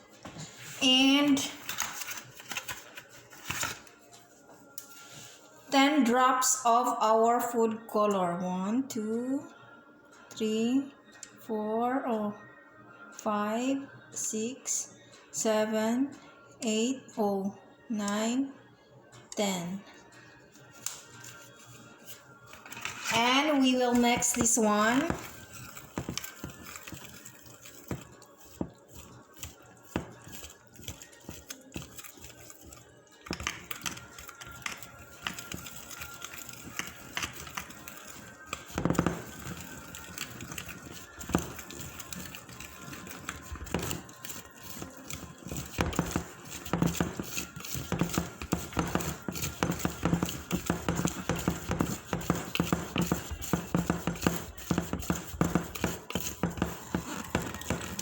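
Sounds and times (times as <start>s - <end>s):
utensil scraping and clicking in bowl: 20.7s - 58.0s.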